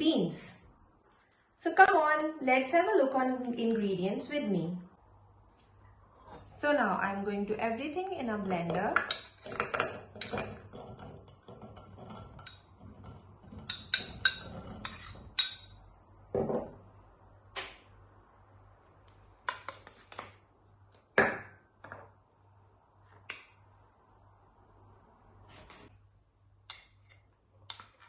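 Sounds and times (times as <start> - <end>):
dishes and utensils clinking: 13.5 - 15.8.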